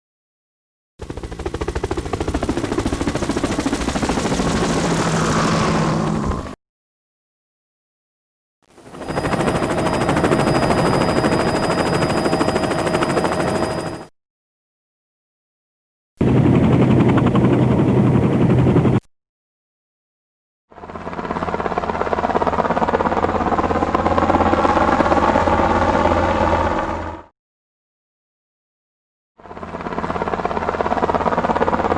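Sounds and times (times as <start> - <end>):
helicopter rotor blades chopping: 1.0 - 6.6, 8.7 - 14.1, 16.2 - 19.0, 20.8 - 27.3, 29.4 - 31.9
whine: 8.7 - 14.1.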